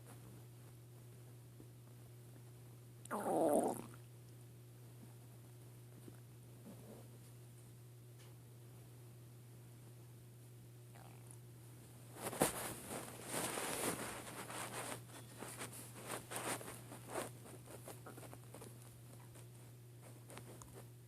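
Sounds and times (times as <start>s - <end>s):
stomach gurgling: 3.1s - 4.0s, 10.9s - 11.4s.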